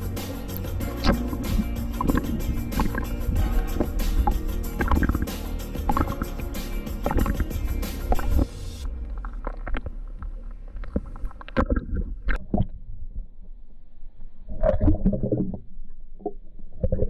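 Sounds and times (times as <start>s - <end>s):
water against a hull: 8.1s - 17.0s.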